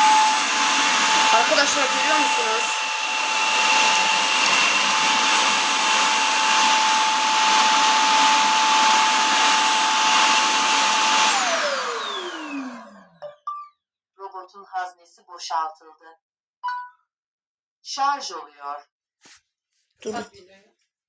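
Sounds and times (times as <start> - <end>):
vacuum dock suction motor whine: 0.0 - 13.2.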